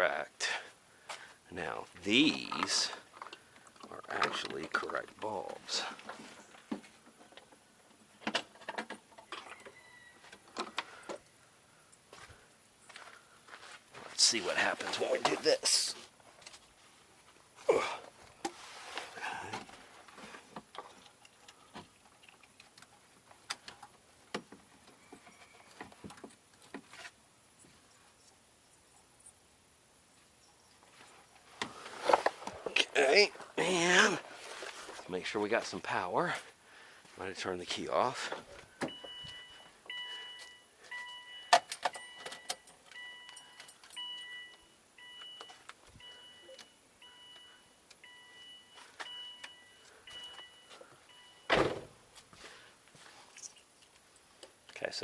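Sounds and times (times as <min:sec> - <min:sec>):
car warning chime beeping: 0:38.9 - 0:51.6.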